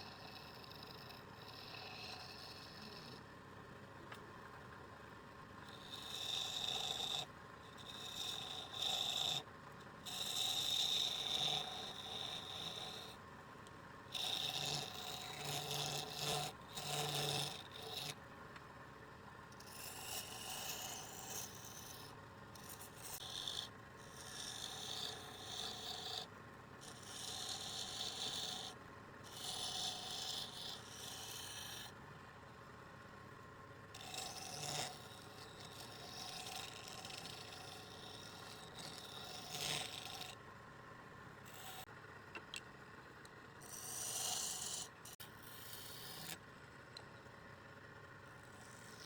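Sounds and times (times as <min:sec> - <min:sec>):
tool scraping wood on lathe: 0:10.1 - 0:13.2, 0:14.1 - 0:18.2, 0:19.6 - 0:31.9, 0:34.0 - 0:40.4, 0:41.5 - 0:41.9, 0:43.6 - 0:46.4.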